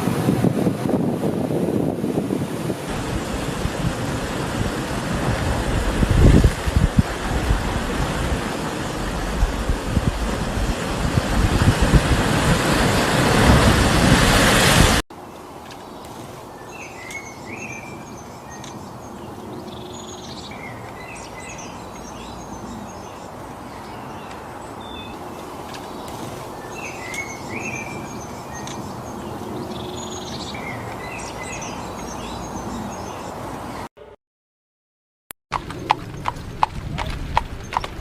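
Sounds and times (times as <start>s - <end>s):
outdoor background hiss: 15.2s - 33.8s
songbirds chirping and whistling: 15.7s - 33.9s.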